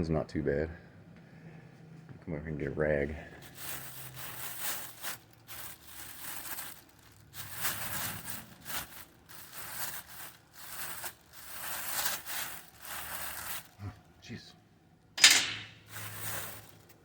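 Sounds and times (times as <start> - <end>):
cloth rag rustling and rubbing: 3.4 - 13.8, 15.8 - 17.0.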